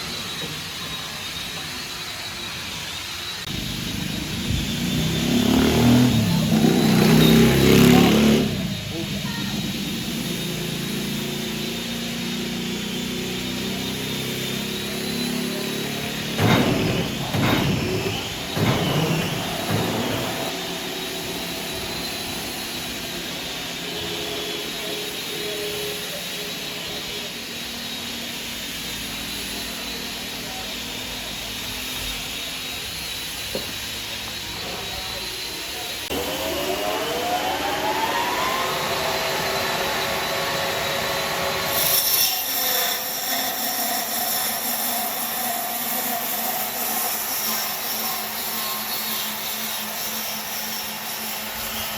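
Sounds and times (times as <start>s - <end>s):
high wavering whine: 0.0s - 41.8s
machinery hiss: 0.0s - 43.4s
engine revving: 3.5s - 24.7s, 36.0s - 41.8s.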